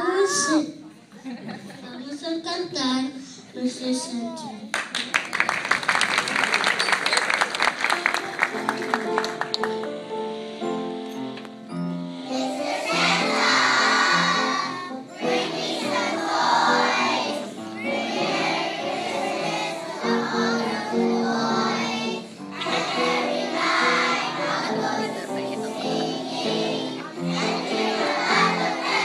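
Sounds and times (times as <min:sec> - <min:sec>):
instrumental accompaniment: 0:07.8 - 0:29.0
children singing: 0:12.2 - 0:29.0.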